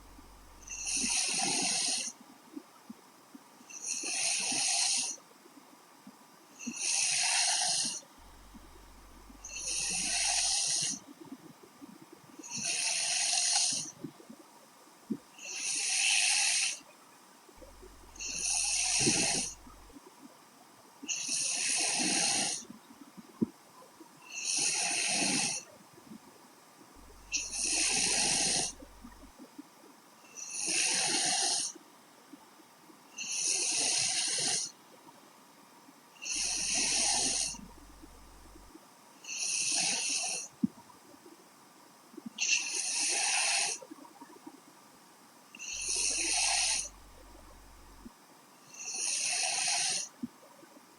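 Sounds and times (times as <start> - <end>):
woman snoring: 0.5 - 2.1, 4.0 - 5.2, 6.7 - 11.0, 12.5 - 13.9, 15.5 - 16.8, 18.2 - 19.7, 21.3 - 22.6, 24.4 - 25.6, 27.3 - 28.9, 30.4 - 31.7, 33.2 - 34.7, 36.2 - 38.6, 39.3 - 40.5, 42.6 - 43.8, 45.6 - 48.0, 48.7 - 50.1.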